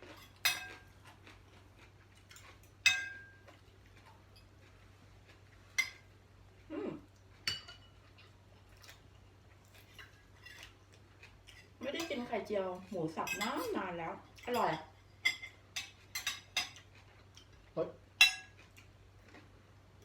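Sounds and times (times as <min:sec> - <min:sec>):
cutlery clinking on plates: 0:00.0 - 0:01.0, 0:02.3 - 0:03.6, 0:07.5 - 0:08.0, 0:14.5 - 0:16.9, 0:18.2 - 0:18.7.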